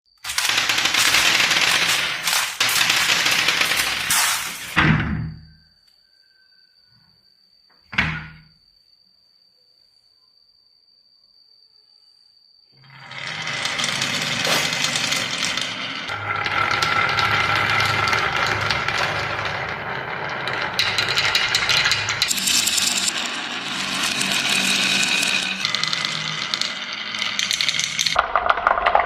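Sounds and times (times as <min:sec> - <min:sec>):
marbles rattling down wooden run: 0:00.2 - 0:04.8, 0:12.8 - 0:29.0.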